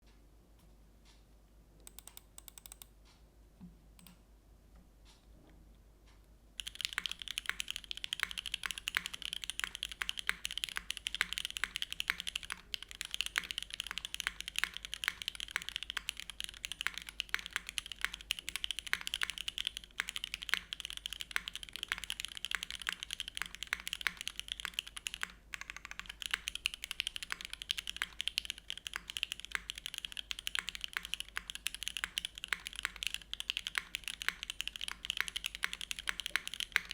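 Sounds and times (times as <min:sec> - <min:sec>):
mechanical keyboard typing: 0:01.8 - 0:02.9, 0:06.6 - 0:36.9.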